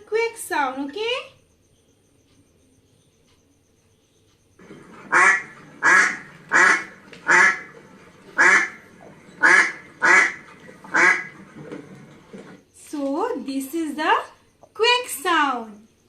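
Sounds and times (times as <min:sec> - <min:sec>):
duck quacking: 0:04.6 - 0:11.5.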